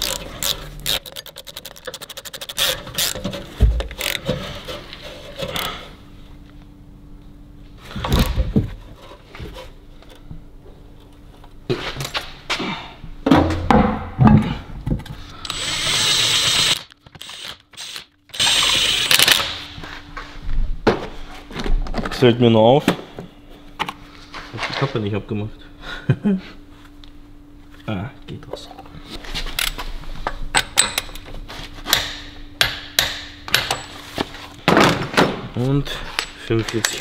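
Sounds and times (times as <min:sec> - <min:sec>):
power tool running: 0:15.4 - 0:19.7
metal parts clanking: 0:36.2 - 0:37.0.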